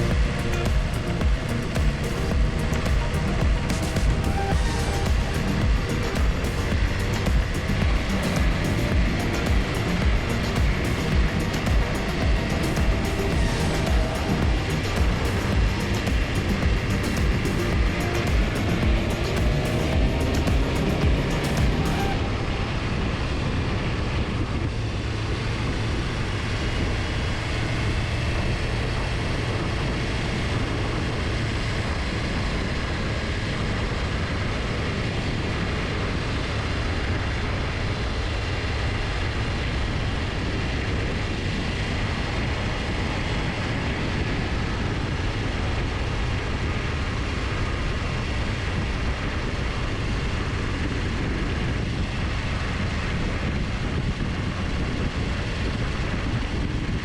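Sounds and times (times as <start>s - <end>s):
motorcycle road noise: 0.0s - 57.0s.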